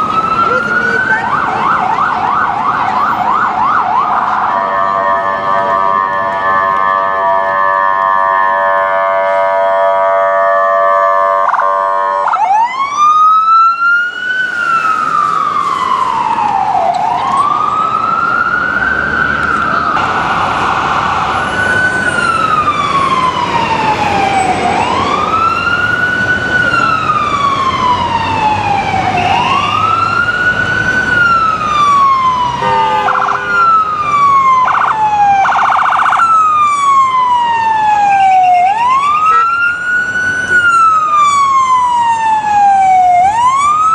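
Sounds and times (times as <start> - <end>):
ambulance siren wailing: 0.0 - 43.9
horn blasts: 32.6 - 33.8.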